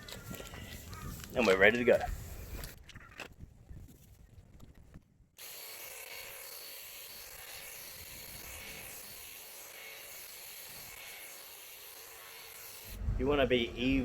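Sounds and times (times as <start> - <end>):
paint sprayer motor buzz: 5.4 - 13.0.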